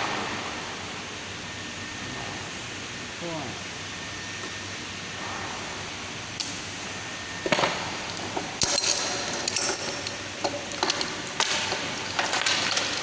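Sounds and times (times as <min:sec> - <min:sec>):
small metal parts clinking: 0:08.1 - 0:13.0.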